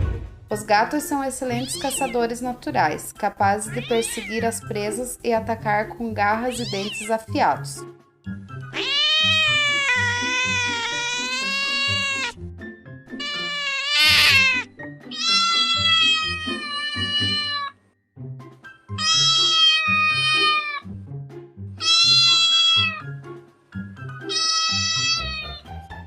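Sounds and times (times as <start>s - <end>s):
background music: 0.0s - 26.0s
cat meowing: 1.5s - 2.2s, 3.6s - 4.6s, 6.5s - 7.2s, 8.7s - 12.4s, 13.2s - 17.8s, 19.0s - 20.9s, 21.8s - 23.2s, 24.2s - 25.7s.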